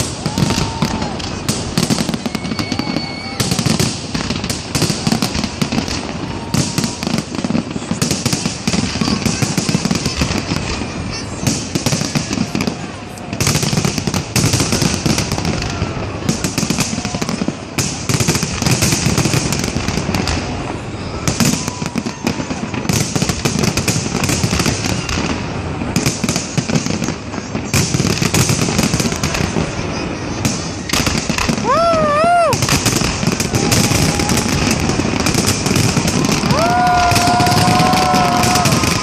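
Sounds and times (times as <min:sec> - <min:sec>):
fireworks bangs and crackling: 0:00.0 - 0:39.0.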